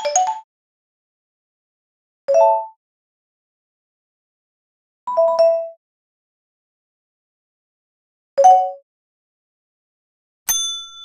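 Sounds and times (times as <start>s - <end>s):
bell-like ding: 10.5s - 11.0s.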